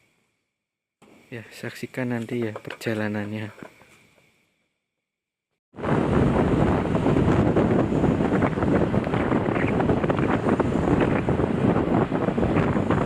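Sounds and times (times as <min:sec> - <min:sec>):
wind buffeting microphone: 0:05.8 - 0:13.0.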